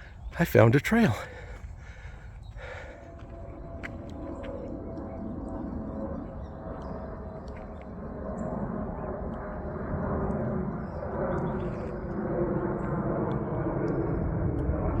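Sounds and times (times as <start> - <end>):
low outdoor rumble: 0.0 - 15.0
footsteps on dirt trail: 1.1 - 4.7.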